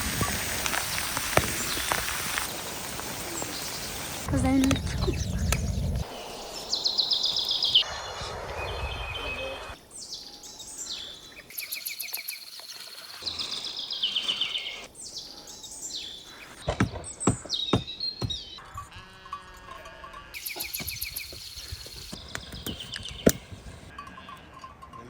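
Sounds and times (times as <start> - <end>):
background hiss: 0.0 - 16.4
songbirds singing: 1.0 - 18.7, 20.4 - 24.4.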